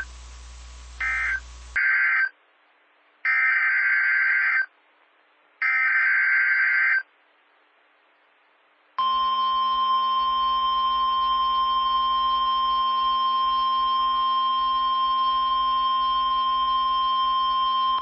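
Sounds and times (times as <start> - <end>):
steady warning alarm tone: 1.0 - 1.6, 9.0 - 18.0.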